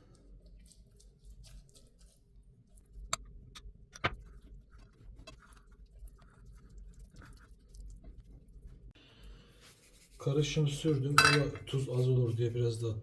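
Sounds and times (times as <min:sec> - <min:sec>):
wet smearing of marinade: 0:00.0 - 0:03.1, 0:04.2 - 0:08.9.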